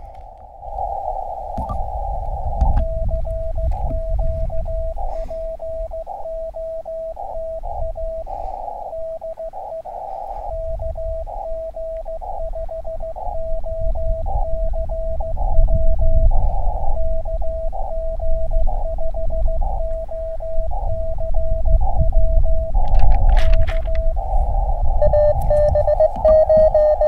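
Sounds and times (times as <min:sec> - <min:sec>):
morse code beeps: 0:02.7 - 0:27.0
radio band hiss: 0:03.7 - 0:15.6.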